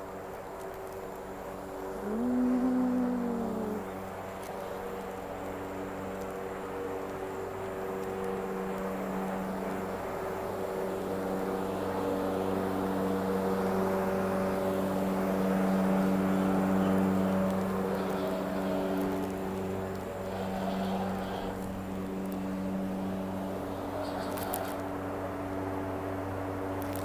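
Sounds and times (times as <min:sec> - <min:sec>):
low engine hum: 0:01.4 - 0:05.5.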